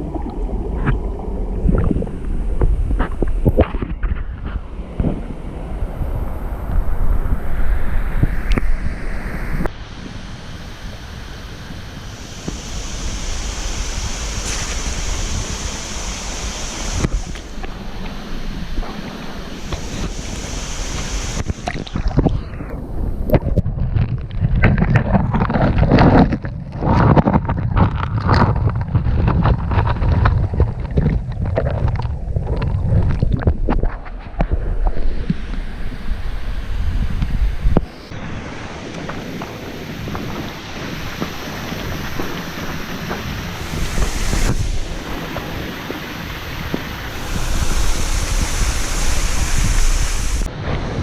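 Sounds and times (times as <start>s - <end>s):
wind buffeting microphone: 0.0s - 51.0s
steady rushing noise: 1.3s - 23.4s, 35.3s - 51.0s.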